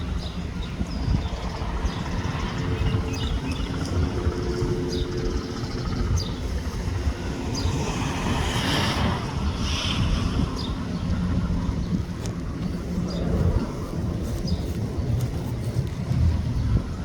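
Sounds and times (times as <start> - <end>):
helicopter rotor and turbine rumble: 0.0 - 17.0.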